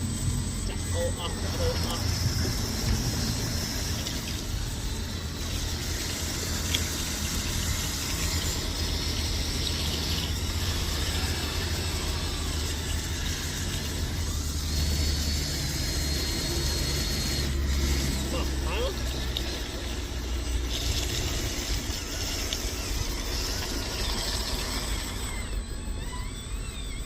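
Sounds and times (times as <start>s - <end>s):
small electric motors running: 0.0s - 27.0s
thin high whine: 0.0s - 27.0s.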